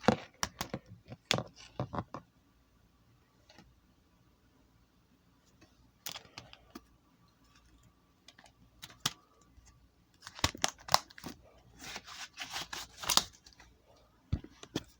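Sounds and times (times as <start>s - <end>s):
packaging clicks and crinkling: 10.2s - 13.7s.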